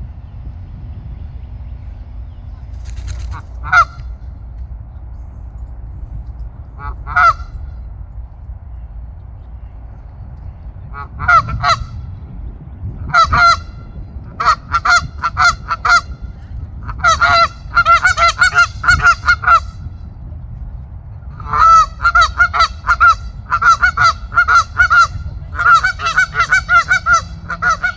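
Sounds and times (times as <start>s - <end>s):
faint low rumble: 0.0s - 27.9s
geese honking: 16.9s - 19.7s, 21.4s - 27.9s.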